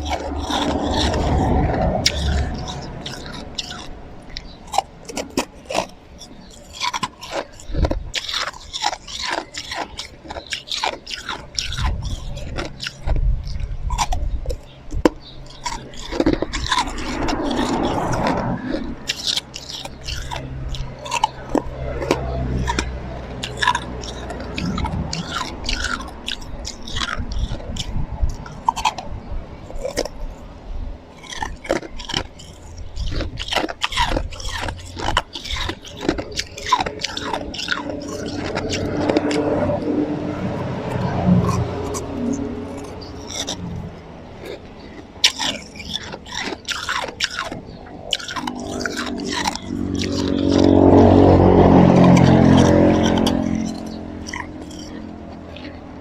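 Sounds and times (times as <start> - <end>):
low rumble: 0.0 - 6.5, 36.3 - 45.3
chewing crunchy ice: 0.0 - 56.0.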